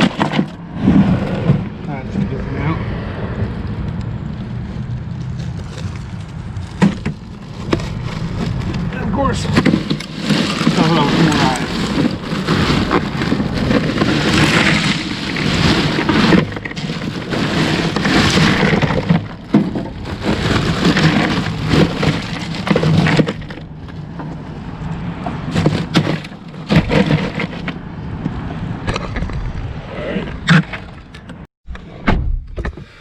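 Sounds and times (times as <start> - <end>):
ice crunching and cracking: 0.0 - 0.6, 5.1 - 24.1, 25.5 - 27.8.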